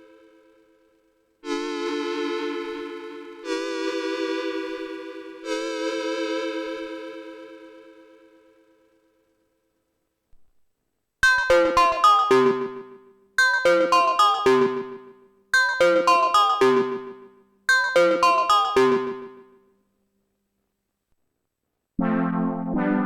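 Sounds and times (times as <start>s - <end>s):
synthesizer plucky notes: 11.2s - 19.6s.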